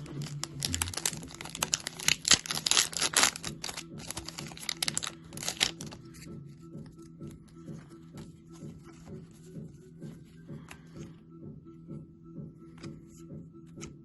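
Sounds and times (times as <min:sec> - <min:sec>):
wrapper crinkling and tearing: 0:00.0 - 0:06.0.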